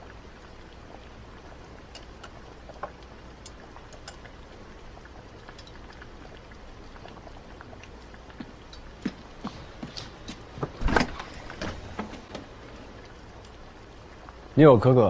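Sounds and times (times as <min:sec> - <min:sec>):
faint light clicks and ticks: 0:01.8 - 0:04.4.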